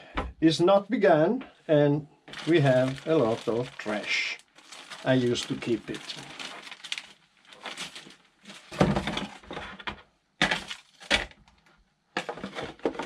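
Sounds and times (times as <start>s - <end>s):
plastic bags crinkling: 2.3s - 9.6s, 10.4s - 11.4s
hard plastic parts clattering: 4.8s - 11.4s, 12.2s - 13.0s.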